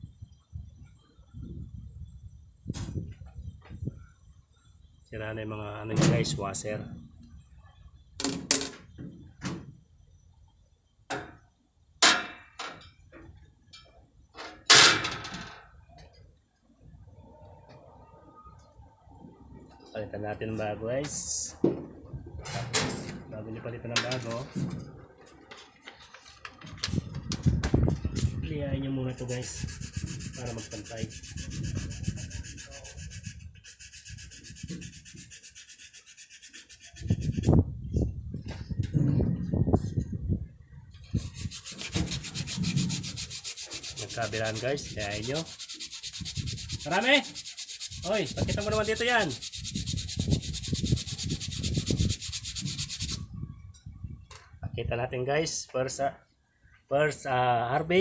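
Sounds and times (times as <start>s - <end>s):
sanding on sandpaper: 28.2s - 37.6s, 41.1s - 53.2s.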